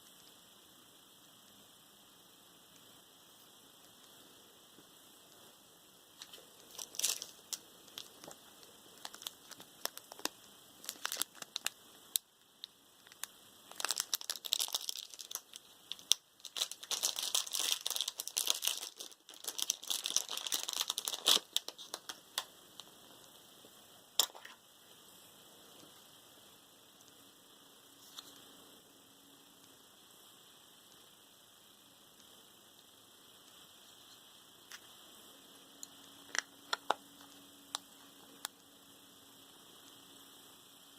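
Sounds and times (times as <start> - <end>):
plastic wrapping crinkling and tearing: 6.2 - 12.2, 13.0 - 22.9.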